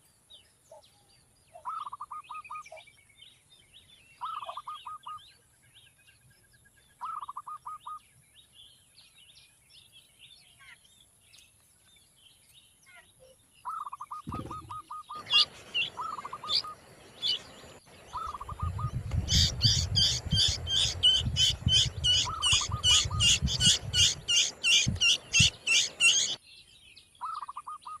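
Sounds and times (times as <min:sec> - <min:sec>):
loud high bird chirps: 0:01.5 - 0:03.1, 0:03.8 - 0:08.0, 0:12.6 - 0:28.0
bird trilling: 0:13.7 - 0:17.5, 0:18.1 - 0:26.4.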